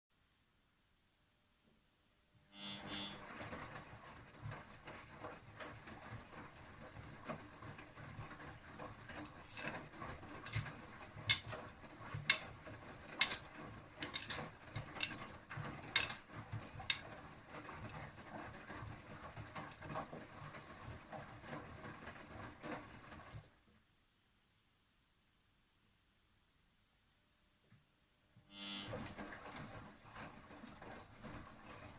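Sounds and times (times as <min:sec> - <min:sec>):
washing machine drum rotating: 0:02.5 - 0:23.5, 0:28.5 - 0:31.9
sharp clicks and knocks: 0:08.2 - 0:20.2.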